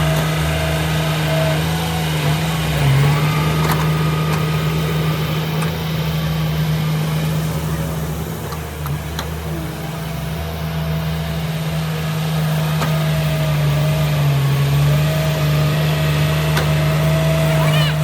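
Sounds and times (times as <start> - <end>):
heavy machine engine running: 0.0 - 18.0.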